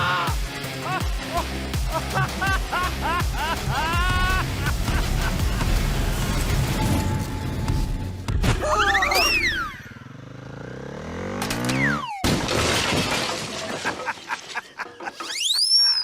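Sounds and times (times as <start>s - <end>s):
crackling shattering effect: 4.1s - 8.2s.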